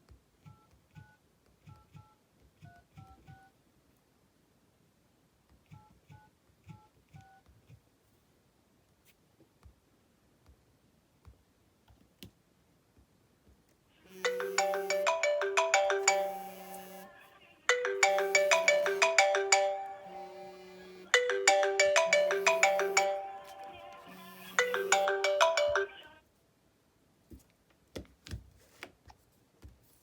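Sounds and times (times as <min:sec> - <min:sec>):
phone ringtone melody: 0:14.1 - 0:26.1.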